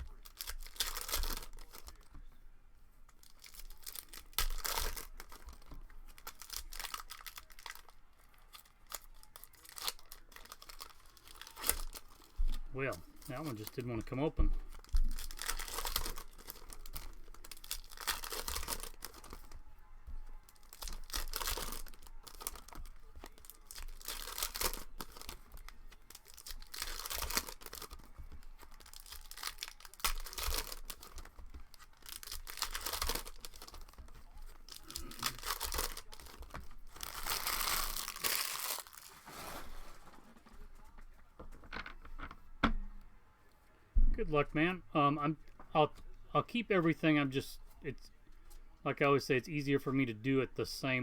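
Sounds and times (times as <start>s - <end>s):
plastic wrappers torn and crinkled: 0.0s - 2.2s, 3.1s - 19.6s, 20.2s - 40.2s.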